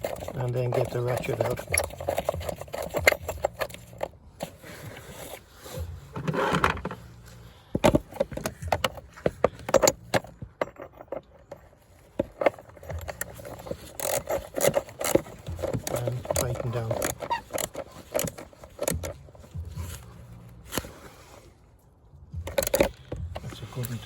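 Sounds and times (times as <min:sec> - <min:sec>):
metal tools clinking and knocking: 0:00.0 - 0:05.4, 0:07.8 - 0:20.1
tool scraping: 0:00.0 - 0:21.6
ratchet clicks: 0:12.8 - 0:19.6, 0:22.4 - 0:24.0.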